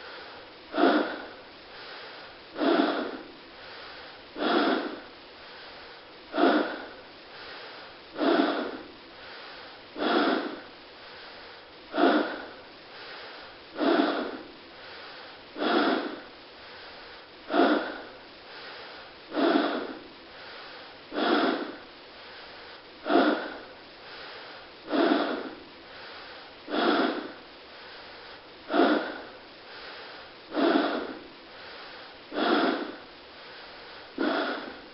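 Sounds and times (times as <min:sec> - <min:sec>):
faint steady hiss: 0:00.0 - 0:34.9
forced noisy breathing: 0:00.0 - 0:34.9.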